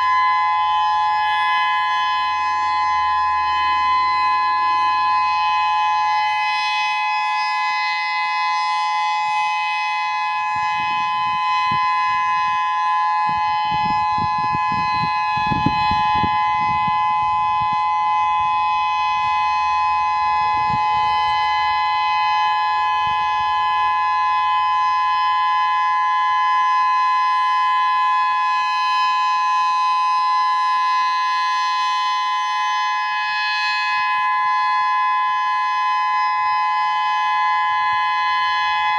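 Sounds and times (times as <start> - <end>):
electronic warning siren steady tone: 0.0 - 38.9.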